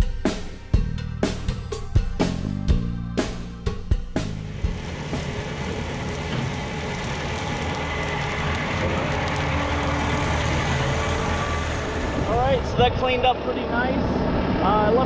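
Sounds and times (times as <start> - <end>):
skid steer diesel engine running: 4.2 - 15.0.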